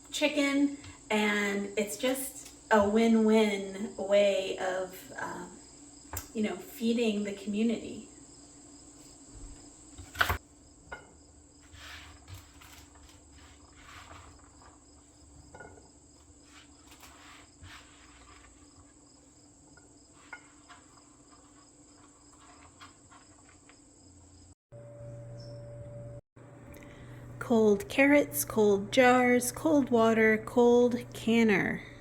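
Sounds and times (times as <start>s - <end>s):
crickets trilling: 7.8s - 24.6s.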